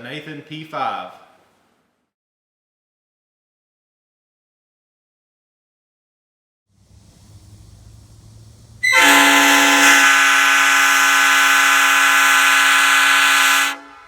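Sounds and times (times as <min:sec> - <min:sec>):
air train horn blast: 0:08.8 - 0:14.0.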